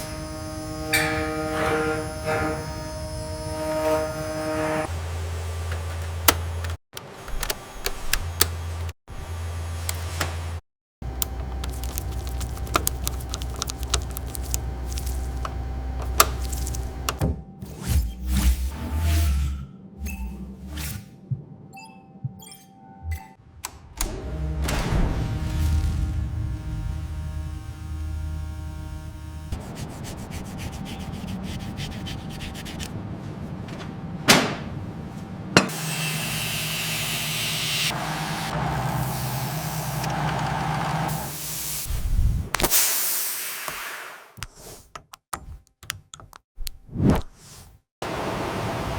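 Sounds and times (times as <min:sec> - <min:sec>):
low machine hum: 0:00.0 - 0:06.7
sharp clicks and knocks: 0:11.2 - 0:17.4
rapid sanding strokes: 0:29.6 - 0:32.9.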